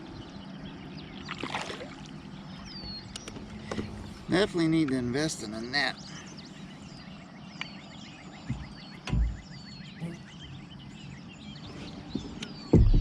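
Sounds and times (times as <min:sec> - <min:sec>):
birds whistling: 0:00.0 - 0:13.0
dull thumps: 0:08.4 - 0:09.4, 0:12.2 - 0:13.0.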